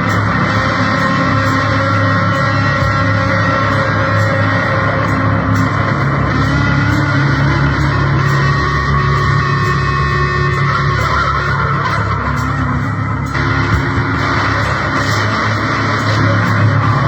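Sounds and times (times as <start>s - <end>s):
distorted electric guitar noise music: 0.0s - 17.0s.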